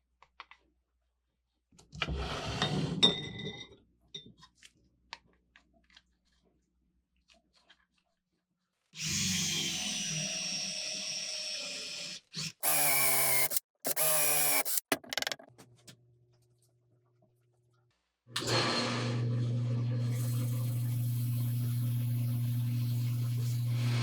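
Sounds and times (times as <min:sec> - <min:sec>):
small power tool motor running: 0:09.0 - 0:15.0, 0:18.4 - 0:24.0.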